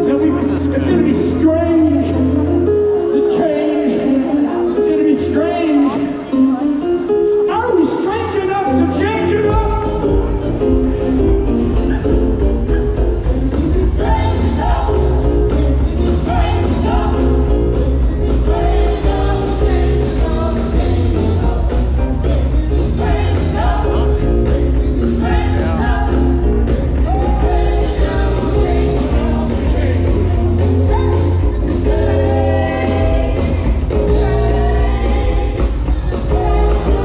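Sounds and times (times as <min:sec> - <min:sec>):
keyboards: 0:00.0 - 0:37.0
bass guitar: 0:08.6 - 0:37.0
rock drum beat: 0:09.5 - 0:37.0
choir singing: 0:13.6 - 0:37.0.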